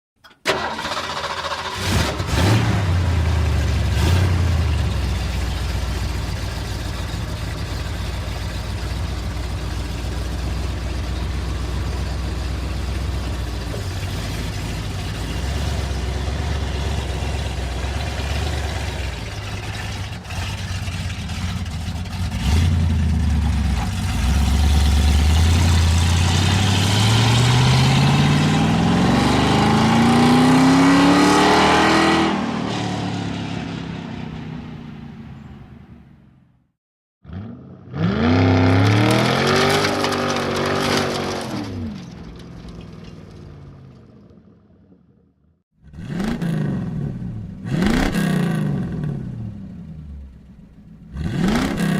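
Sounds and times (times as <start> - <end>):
car engine starting and idling: 0.2 - 30.7
car engine revving: 0.6 - 7.9, 12.2 - 34.5, 37.3 - 41.8, 45.8 - 51.9
car accelerating: 10.7 - 34.8.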